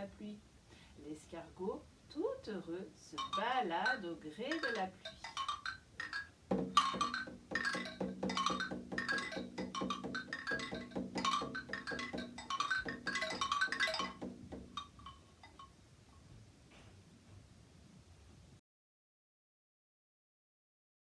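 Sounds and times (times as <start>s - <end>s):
small percussion ringing notes: 3.2s - 15.8s.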